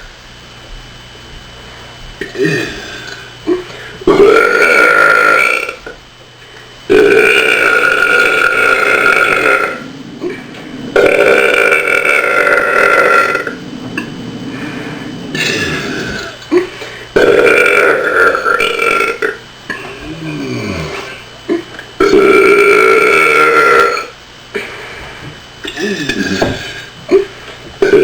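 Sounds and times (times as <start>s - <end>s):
person burping loudly: 2.2s - 5.9s, 6.9s - 19.4s, 20.2s - 24.1s, 25.7s - 28.0s.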